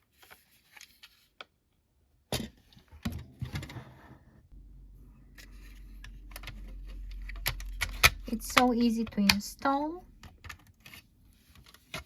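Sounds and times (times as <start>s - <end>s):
low steady hum: 3.6s - 11.5s.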